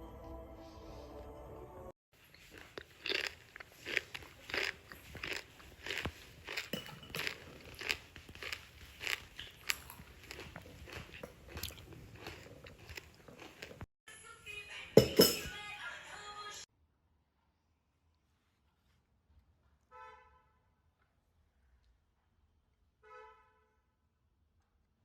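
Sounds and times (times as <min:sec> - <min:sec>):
person chewing crunchy food: 0:02.2 - 0:13.9.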